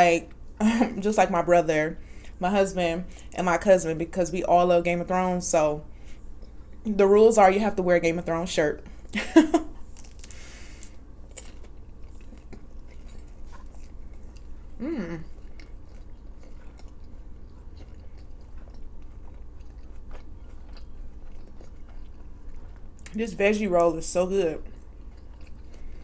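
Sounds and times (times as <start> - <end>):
crunchy chewing and biting: 9.8 - 26.0
person humming: 14.8 - 15.3.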